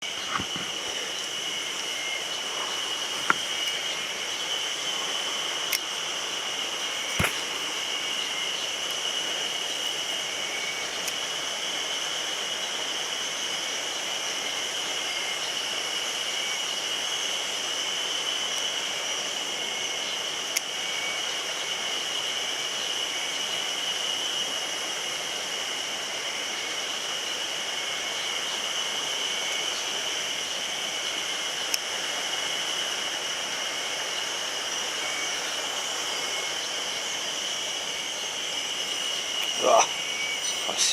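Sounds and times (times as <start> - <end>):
high-pitched drone: 34.0 - 40.9.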